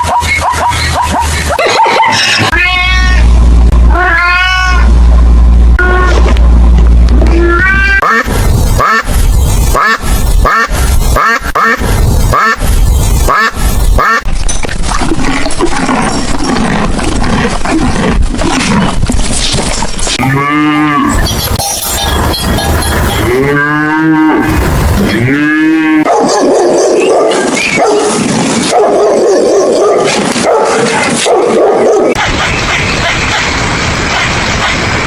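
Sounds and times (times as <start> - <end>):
noisy background: 0.0 - 20.3, 21.0 - 25.3
cattle mooing: 20.2 - 21.2, 23.2 - 26.1.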